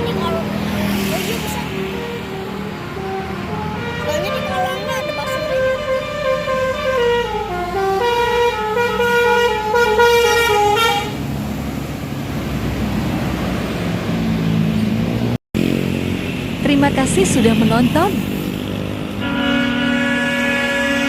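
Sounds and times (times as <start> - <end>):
bus engine running: 0.0 - 21.0
road noise: 0.0 - 21.0
bus horn playing melody: 1.6 - 11.3, 19.0 - 21.0.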